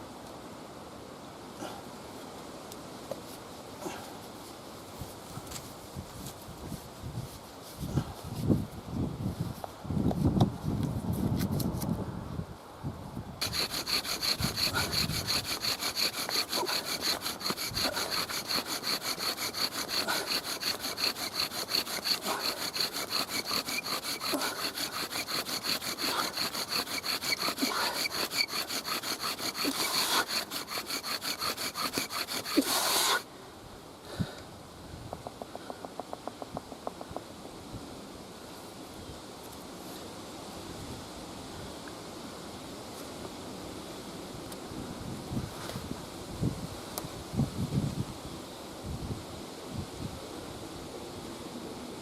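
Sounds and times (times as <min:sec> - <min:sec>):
bow drill grinding on wood: 0:13.4 - 0:33.2.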